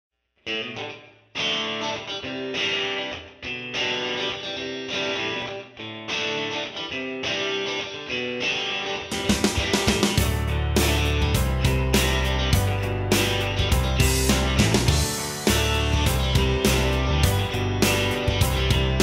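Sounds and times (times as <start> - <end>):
guitar chords: 0.4 - 19.0.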